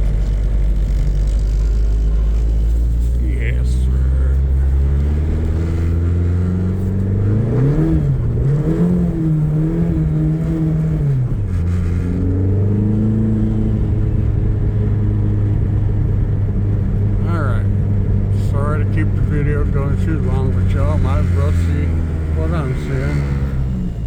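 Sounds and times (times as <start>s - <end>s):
car engine revving: 0.0s - 24.0s
road and wind noise: 0.0s - 24.0s.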